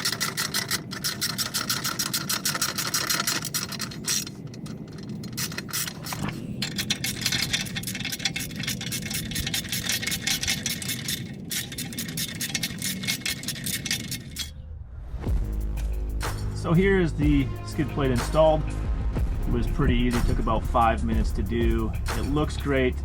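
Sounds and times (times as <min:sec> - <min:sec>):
metallic tool clicking and scraping: 0:00.0 - 0:14.6, 0:21.5 - 0:23.0.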